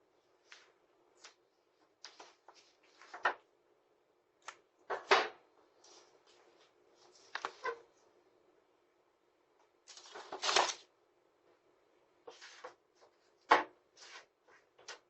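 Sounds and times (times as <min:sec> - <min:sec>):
paper and envelopes rustling: 0:00.4 - 0:03.4, 0:09.9 - 0:10.9, 0:12.3 - 0:15.0.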